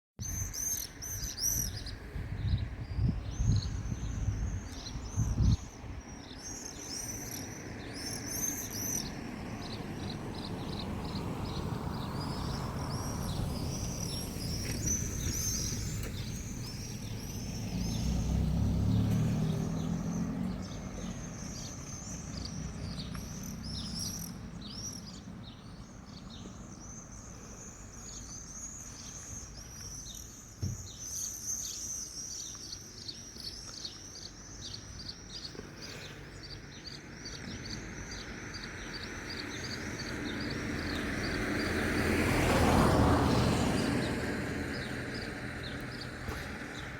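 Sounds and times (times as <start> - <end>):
small birds chirping: 0.2 - 46.9.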